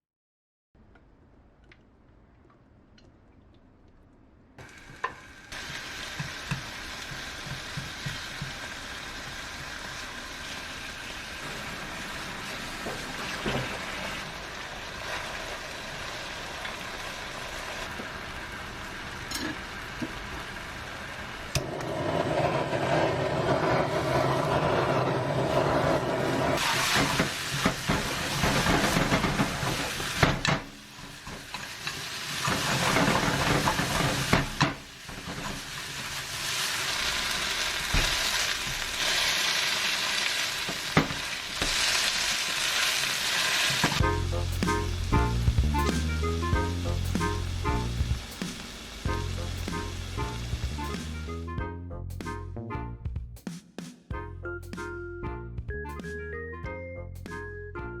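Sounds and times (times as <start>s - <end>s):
pork sizzling in a frying pan: 4.6s - 21.8s, 26.6s - 51.2s.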